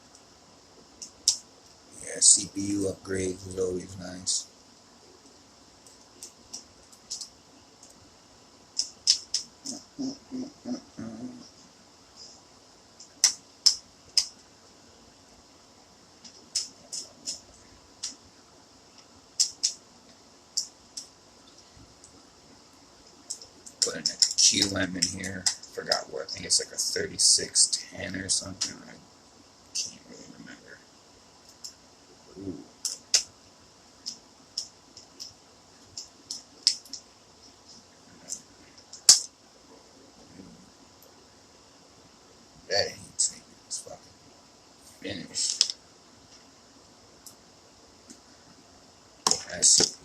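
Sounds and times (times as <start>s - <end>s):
small clicks and taps: 1.0s - 1.8s, 5.8s - 8.0s, 8.8s - 9.5s, 18.9s - 22.2s, 23.0s - 26.0s, 32.8s - 33.3s, 34.0s - 39.3s, 45.4s - 46.5s, 49.2s - 50.0s
clicks and taps of small parts: 45.5s - 46.4s.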